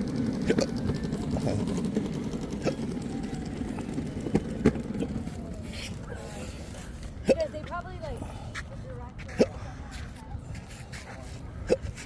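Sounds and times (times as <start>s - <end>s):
person hiccuping: 0.4s - 0.8s, 7.2s - 7.6s, 9.3s - 9.6s, 11.6s - 12.0s.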